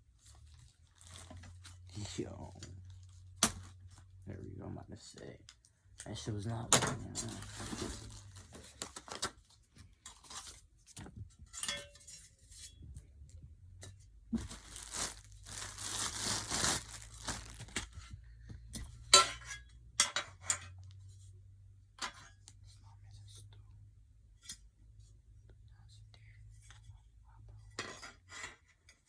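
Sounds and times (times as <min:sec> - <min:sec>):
tape peeled and torn: 0:00.8 - 0:01.7, 0:07.3 - 0:09.4, 0:14.3 - 0:18.0.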